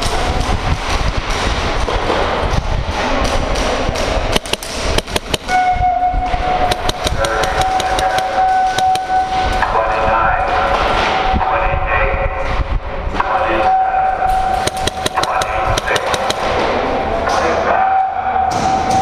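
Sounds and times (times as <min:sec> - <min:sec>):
steady low rumble: 0:00.0 - 0:13.2, 0:14.2 - 0:17.3
airsoft gun shots: 0:04.3 - 0:05.7, 0:06.6 - 0:09.3, 0:14.5 - 0:16.8.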